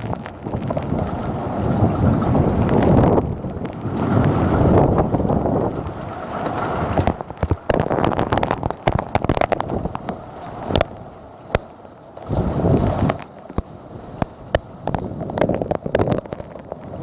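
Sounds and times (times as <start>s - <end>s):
heavy raindrops striking surface: 0.0s - 17.0s
wind gusting on microphone: 0.0s - 17.0s.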